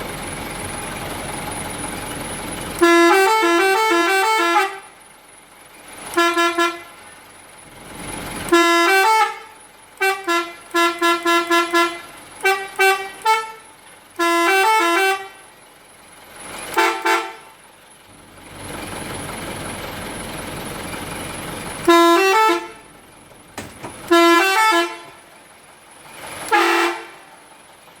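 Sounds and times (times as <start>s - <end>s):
musical bus horn: 2.7s - 5.1s, 6.1s - 7.2s, 8.5s - 15.5s, 16.7s - 17.6s, 21.8s - 23.0s, 23.6s - 25.4s, 26.4s - 27.5s.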